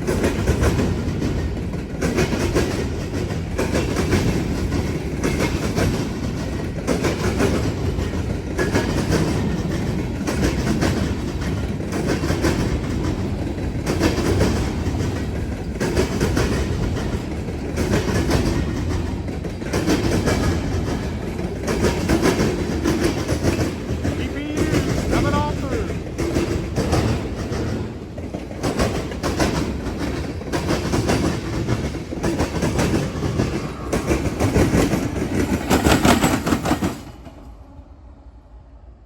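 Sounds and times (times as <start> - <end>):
wheels clacking over crossing: 0.0 - 37.2
steel wheels rumbling on rail: 0.0 - 39.0.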